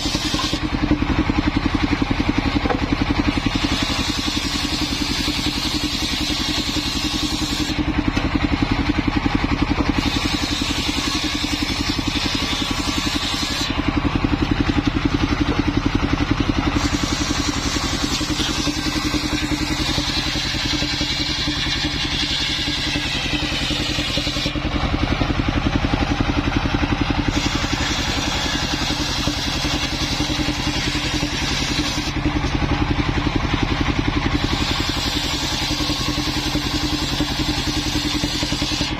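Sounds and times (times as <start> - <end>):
small engine running: 0.0 - 38.9.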